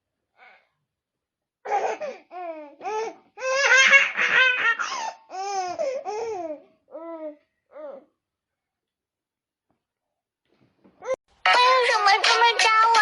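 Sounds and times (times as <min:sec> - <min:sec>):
baby laughing: 0:03.4 - 0:06.4.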